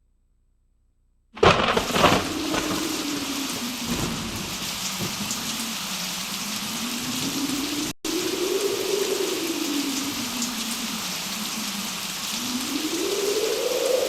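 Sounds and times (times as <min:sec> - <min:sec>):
thunder crack: 0:01.4 - 0:07.9
heavy rain falling: 0:01.4 - 0:14.0.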